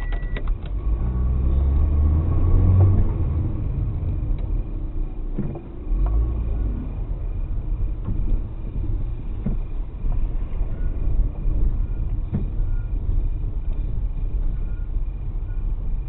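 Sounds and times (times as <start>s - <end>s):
car road and engine rumble: 0.0s - 16.0s.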